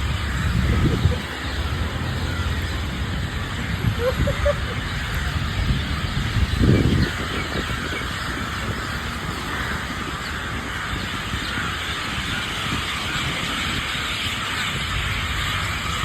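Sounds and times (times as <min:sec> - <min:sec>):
chorus of roosting birds: 0:00.0 - 0:16.0
steady low rumble: 0:00.0 - 0:16.0.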